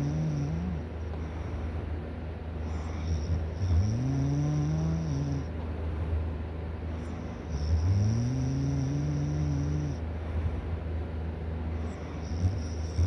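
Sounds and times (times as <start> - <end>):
person snoring: 7.5 - 10.0.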